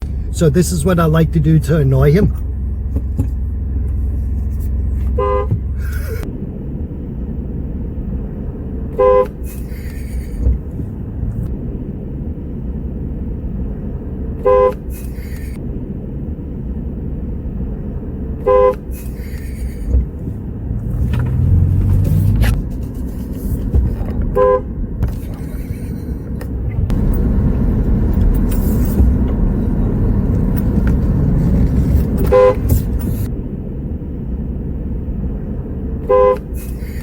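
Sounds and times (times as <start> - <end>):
car driving rumble: 0.0 - 37.0
car horn toots: 5.1 - 6.2, 8.9 - 9.4, 14.4 - 14.9, 18.4 - 18.9, 24.2 - 24.7, 32.1 - 33.0, 36.0 - 36.6.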